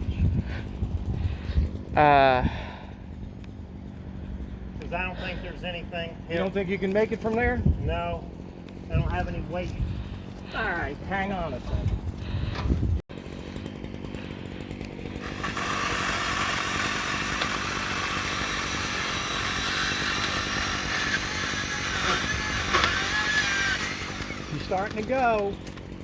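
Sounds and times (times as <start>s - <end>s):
chainsaw cutting branch: 13.2s - 26.0s.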